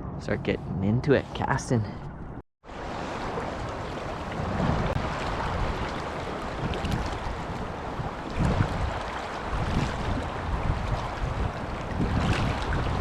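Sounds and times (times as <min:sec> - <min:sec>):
wind rumble on microphone: 0:00.0 - 0:13.0
river water rushing: 0:02.7 - 0:13.0.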